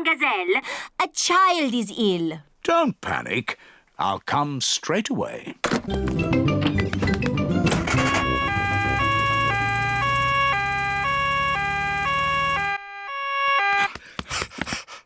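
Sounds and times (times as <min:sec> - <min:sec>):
cartoon two-tone siren: 0:07.6 - 0:14.0.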